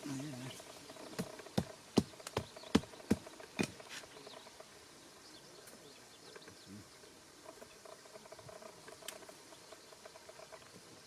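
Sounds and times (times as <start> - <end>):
pulsing insect trill: 7.0 - 11.0.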